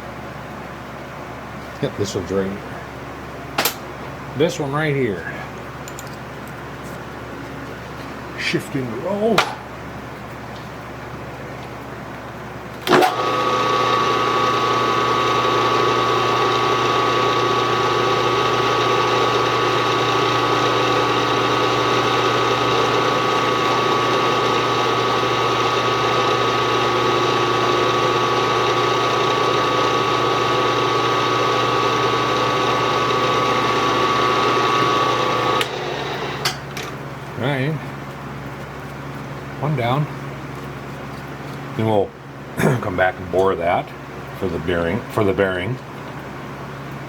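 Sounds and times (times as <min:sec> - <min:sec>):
milling machine motor whining: 0:12.8 - 0:36.7.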